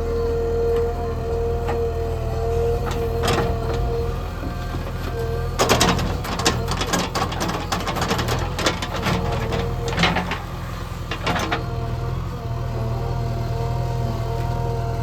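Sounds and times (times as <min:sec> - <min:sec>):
diesel engine running: 0:00.0 - 0:15.0
clattering knocks and rattles: 0:02.8 - 0:11.8.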